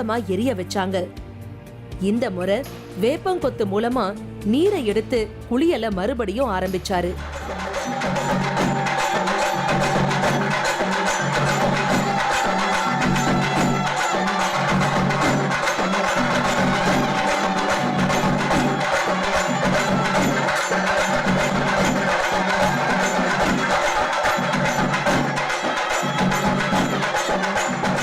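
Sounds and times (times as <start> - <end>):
rhythmic clacking percussion: 2.2 - 28.0
bell-like ringing: 7.2 - 28.0.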